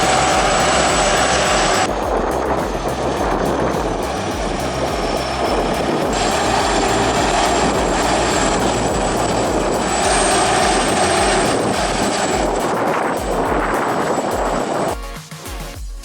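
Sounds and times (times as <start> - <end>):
diesel engine running: 0.0 - 12.6
thin high whine: 0.0 - 15.6.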